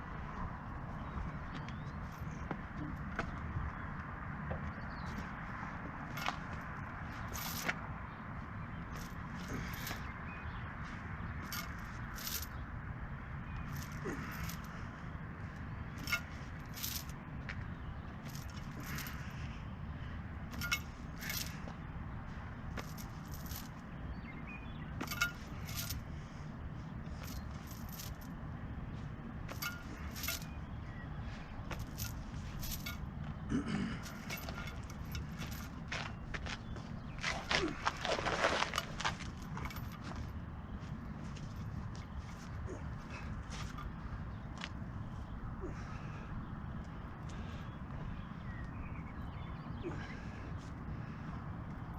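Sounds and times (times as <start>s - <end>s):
low rumble of road travel: 0.0s - 51.9s
light metallic jingles and rattles: 4.8s - 12.7s, 13.4s - 14.9s, 15.5s - 45.3s
metallic clinks and jingles: 7.2s - 7.7s, 11.4s - 12.6s, 13.6s - 14.7s, 16.0s - 17.2s, 18.2s - 19.3s, 20.5s - 21.7s, 22.8s - 23.9s, 25.0s - 26.0s, 27.2s - 28.4s, 29.5s - 30.7s, 31.7s - 33.2s, 34.0s - 36.2s, 38.7s - 40.2s.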